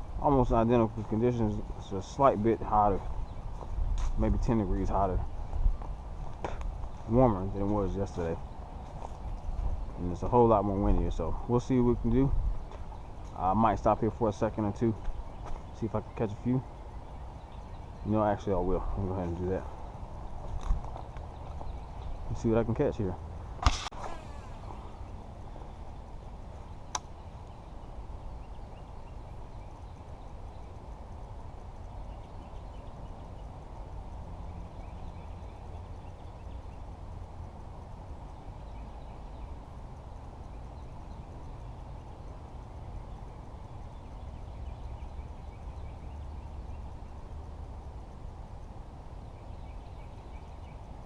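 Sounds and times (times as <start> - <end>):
wind buffeting microphone: 0.0 - 22.7
sharp click: 23.6 - 24.2, 26.9 - 27.1.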